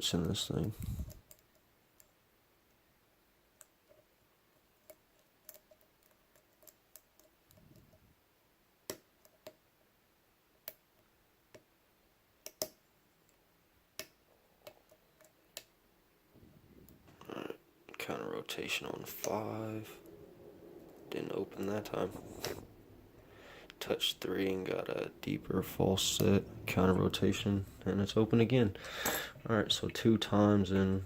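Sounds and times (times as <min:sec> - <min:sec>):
small metallic clicks of lock picking: 0:04.8 - 0:08.0.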